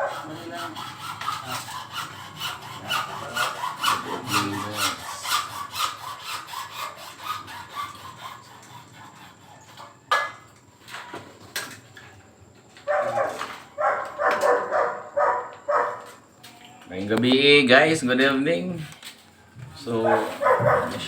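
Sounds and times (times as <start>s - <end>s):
hand saw cutting: 0.0s - 10.1s, 19.8s - 21.0s.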